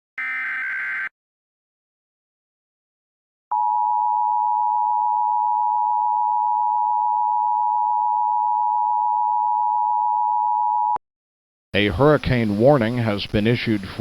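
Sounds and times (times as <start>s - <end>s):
dual-tone electronic alarm: 0.2s - 1.1s.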